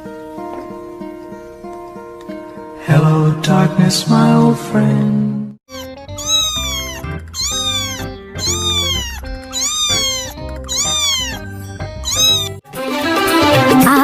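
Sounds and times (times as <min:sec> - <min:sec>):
background music: 0:00.0 - 0:14.0
cat meowing: 0:05.7 - 0:12.6
music with wavering melody: 0:05.7 - 0:14.0.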